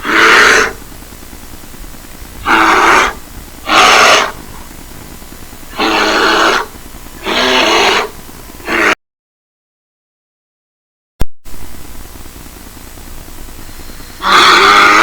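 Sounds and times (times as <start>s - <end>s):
bear roaring: 0.0s - 0.8s, 2.4s - 4.4s, 5.7s - 9.0s, 14.2s - 15.0s.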